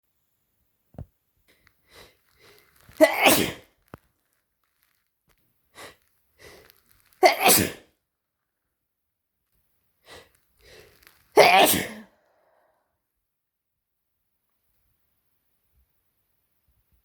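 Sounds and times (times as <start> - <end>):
person sneezing: 1.9 - 3.6, 5.8 - 7.8, 10.1 - 12.1
faint short sounds before sneezes: 2.0 - 3.7, 7.2 - 7.9, 10.1 - 12.1.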